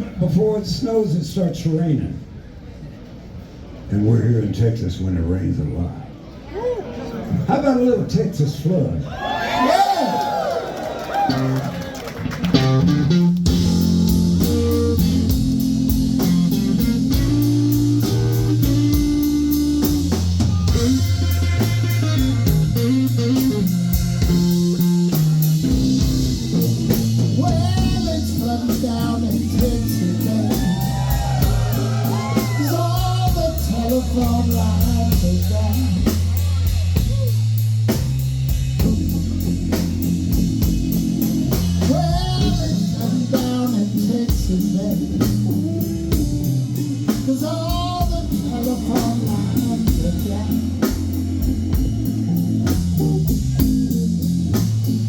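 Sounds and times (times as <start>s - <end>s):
blues band playing: 9.5s - 55.0s
electric guitar bending notes: 11.3s - 55.0s.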